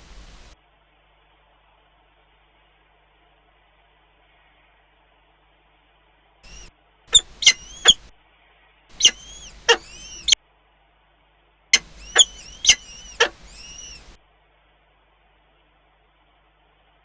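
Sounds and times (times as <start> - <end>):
birds giving sharp high calls: 0.0 - 0.5, 6.5 - 8.1, 9.0 - 10.4, 11.8 - 14.2.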